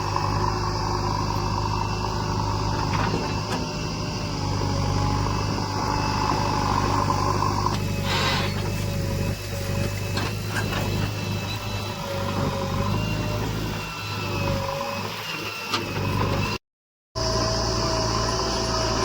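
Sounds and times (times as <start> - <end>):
wavering whine: 0.0 - 13.4
heavy machinery diesel engine: 0.0 - 16.6, 17.2 - 19.0.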